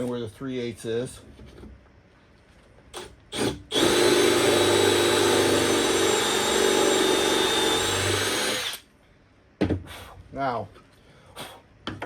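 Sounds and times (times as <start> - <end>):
power drill boring into wood: 3.0 - 8.8.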